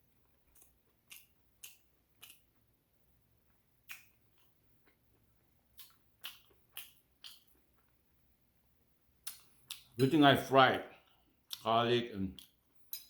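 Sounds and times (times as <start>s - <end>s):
wet mouth clicks and lip smacks: 0.5s - 2.7s, 3.8s - 5.0s, 5.7s - 7.9s, 9.2s - 10.0s, 12.4s - 13.0s.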